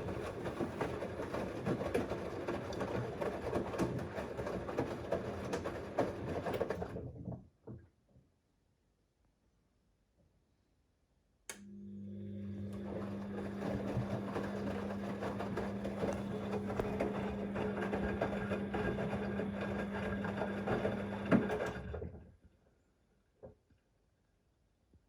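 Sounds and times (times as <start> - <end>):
drain pump humming: 11.7 - 22.1.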